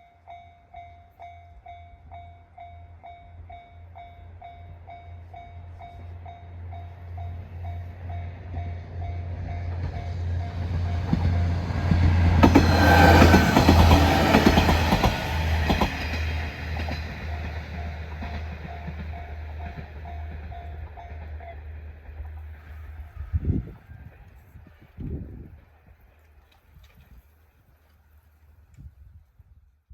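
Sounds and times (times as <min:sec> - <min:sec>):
diesel train passing: 0:00.2 - 0:25.7
train wheels clacking on rails: 0:07.3 - 0:22.9.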